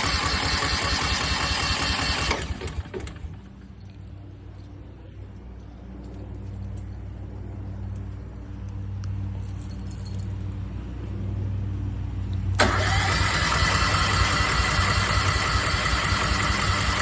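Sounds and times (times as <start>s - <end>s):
generator starter cranking engine: 0.0s - 3.6s, 12.6s - 17.0s
low hum: 2.4s - 12.8s.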